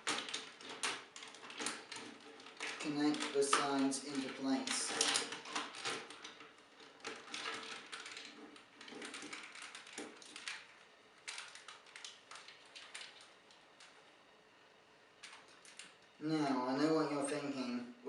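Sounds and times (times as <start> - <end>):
plastic toy parts clicking: 0.0 - 13.9.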